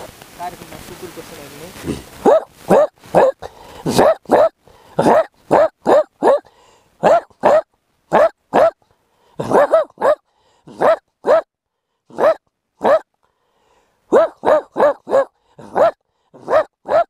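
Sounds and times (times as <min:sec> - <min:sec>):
man imitating dog barks: 0:01.8 - 0:08.8, 0:09.4 - 0:11.5, 0:12.1 - 0:13.1, 0:14.1 - 0:17.0.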